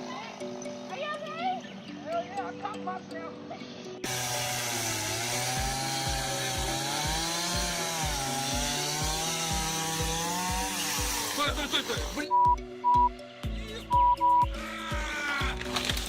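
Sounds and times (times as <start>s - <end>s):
chainsaw running: 4.0s - 12.3s, 15.5s - 16.0s
low thumping beat: 12.3s - 14.6s.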